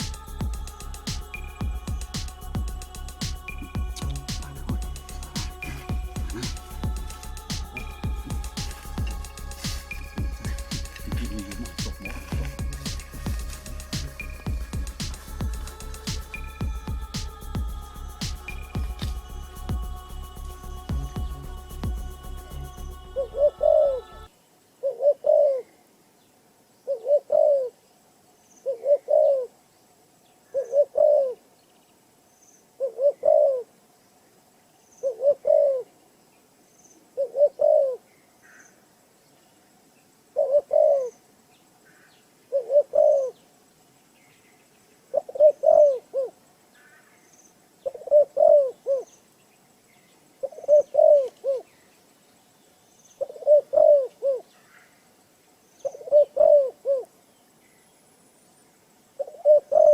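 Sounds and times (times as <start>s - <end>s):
dove cooing: 24.8s - 25.7s, 26.9s - 27.8s, 28.7s - 29.5s, 30.6s - 31.4s, 32.8s - 33.7s, 35.0s - 35.9s, 37.2s - 38.0s, 40.4s - 41.2s, 42.5s - 43.4s, 45.2s - 46.4s, 47.9s - 49.1s, 50.4s - 51.7s, 53.2s - 54.5s, 55.9s - 57.1s, 59.2s - 59.9s.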